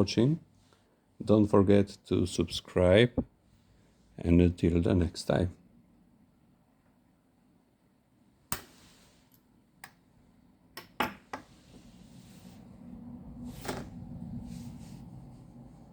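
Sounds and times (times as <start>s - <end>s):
faint low hum: 11.4s - 15.9s.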